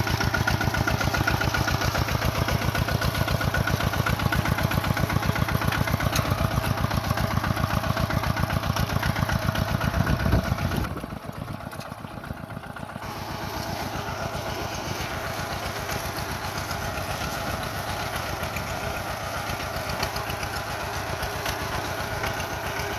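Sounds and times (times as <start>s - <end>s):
diesel bulldozer engine running: 0.0s - 22.9s.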